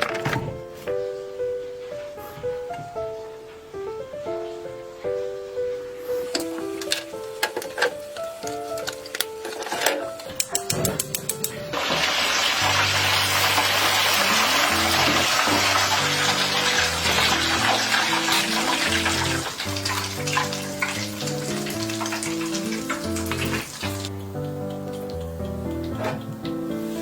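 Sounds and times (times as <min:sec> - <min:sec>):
background music: 0:00.0 - 0:27.0
water running: 0:05.2 - 0:27.0
sharp clicks: 0:10.2 - 0:11.8.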